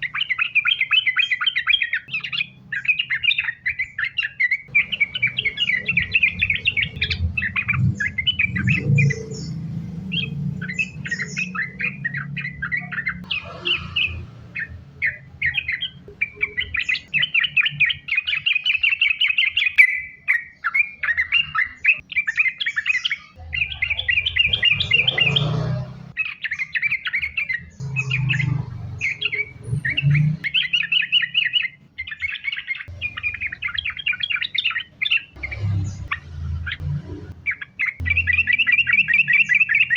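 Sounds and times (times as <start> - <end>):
bulbul singing chattering notes: 0.0 - 39.9
low rumble: 4.7 - 15.0.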